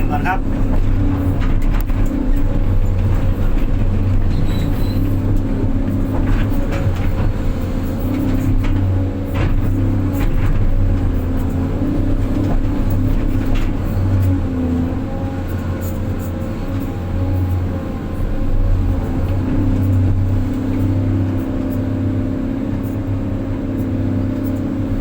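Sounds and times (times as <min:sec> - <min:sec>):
knocks and rattles: 0:00.0 - 0:14.8
diesel truck engine running: 0:00.0 - 0:25.0.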